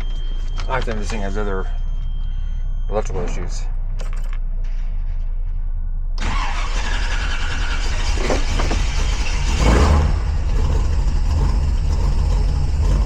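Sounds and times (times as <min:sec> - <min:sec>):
car engine idling: 0:06.2 - 0:13.0.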